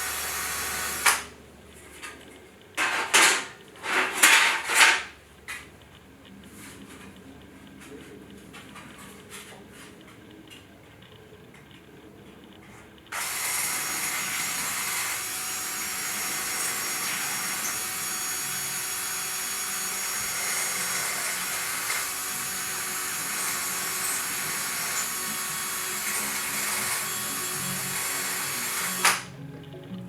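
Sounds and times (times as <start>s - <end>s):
power tool grinding: 0.0s - 1.3s, 13.1s - 29.4s.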